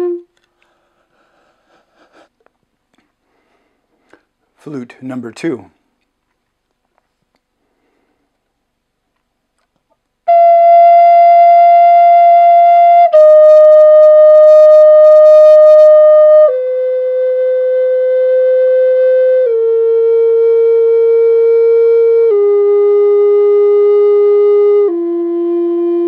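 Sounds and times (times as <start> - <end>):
flute playing long held notes: 0.0 - 0.5, 10.3 - 26.0.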